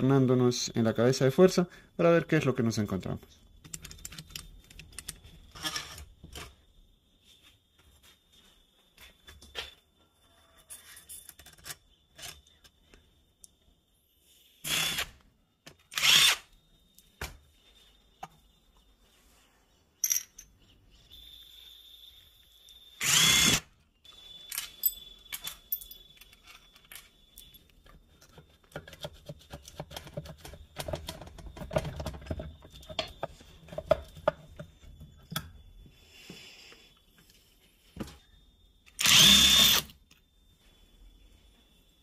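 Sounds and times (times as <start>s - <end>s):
metal tools clinking: 20.0s - 20.7s, 24.5s - 27.7s
power tool bursts: 23.0s - 23.7s, 39.0s - 39.9s.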